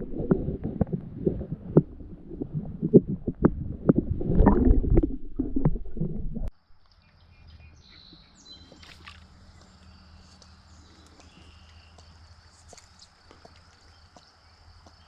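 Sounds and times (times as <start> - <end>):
low rumble: 0.0 - 6.5
water sloshing: 0.0 - 6.5, 8.6 - 14.2
faint high chirping calls: 6.6 - 15.0.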